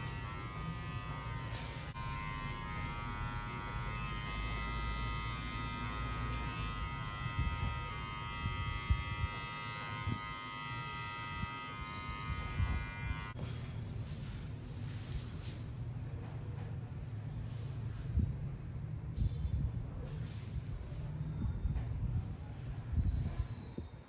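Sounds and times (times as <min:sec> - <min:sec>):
electric hair clipper buzzing: 0:00.0 - 0:13.4.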